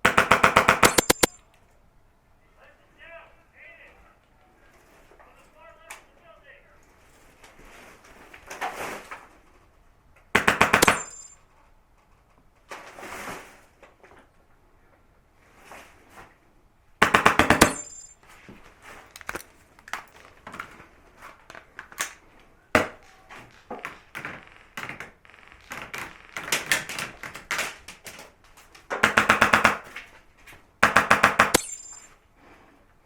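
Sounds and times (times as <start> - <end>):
airsoft rifle full-auto bursts: 0.0 - 1.4, 10.4 - 11.2, 17.0 - 17.8, 23.9 - 27.9, 29.0 - 29.9, 30.8 - 31.8.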